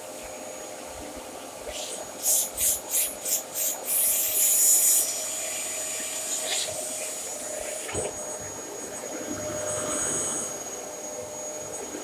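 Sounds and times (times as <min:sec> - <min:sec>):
vacuum cleaner running: 0:03.9 - 0:12.0.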